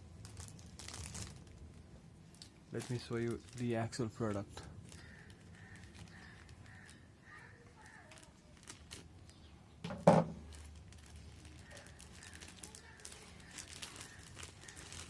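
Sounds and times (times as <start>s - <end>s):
loud knock: 9.9s - 10.4s.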